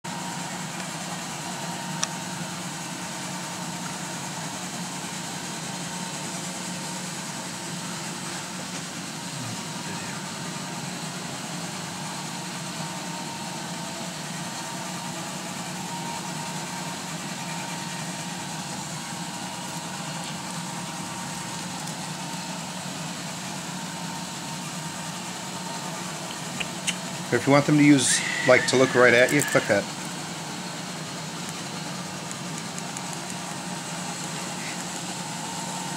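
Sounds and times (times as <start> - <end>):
robot vacuum motor humming: 27.8 - 35.6.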